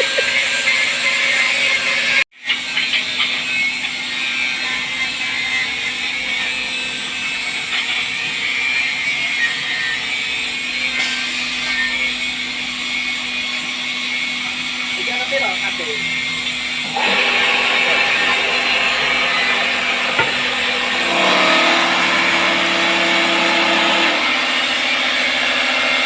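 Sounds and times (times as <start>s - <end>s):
lathe motor humming: 14.3s - 26.0s
cutter hissing on wood: 14.4s - 26.0s.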